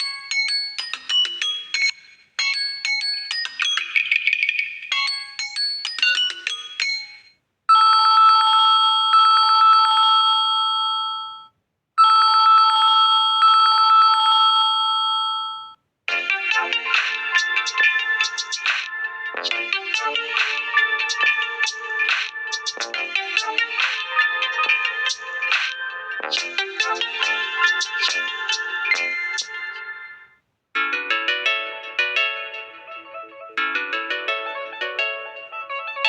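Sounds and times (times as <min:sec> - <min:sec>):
electronic ringtone melody: 0:00.0 - 0:36.0
trilling phone ring: 0:06.9 - 0:15.8.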